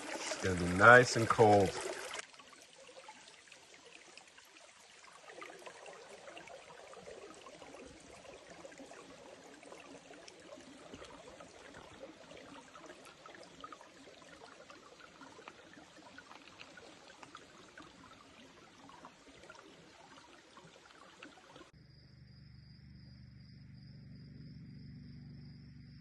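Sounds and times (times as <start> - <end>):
stream trickling: 0.0 - 21.8
low hum: 21.8 - 26.0.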